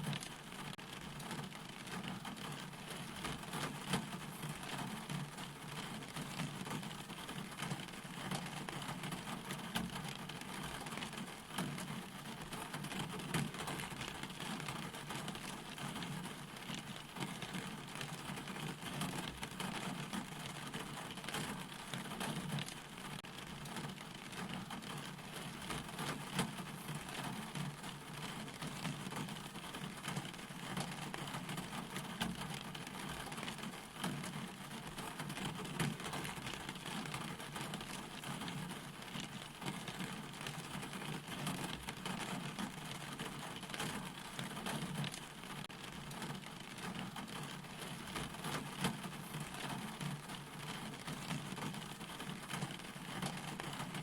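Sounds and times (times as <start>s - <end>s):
steady rain falling: 0.0s - 54.0s.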